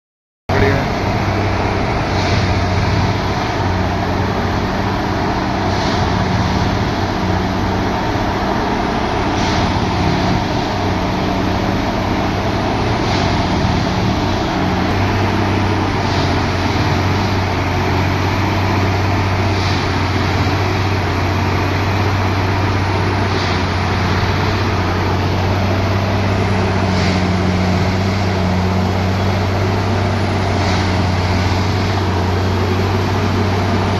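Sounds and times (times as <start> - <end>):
engine hum: 0.5 - 33.9.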